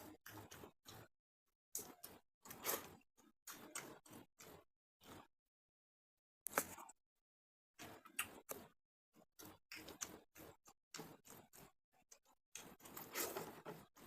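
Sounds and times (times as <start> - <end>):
person chewing with wet mouth sounds: 0.0 - 1.1, 1.8 - 5.3, 6.5 - 7.0, 7.8 - 14.0.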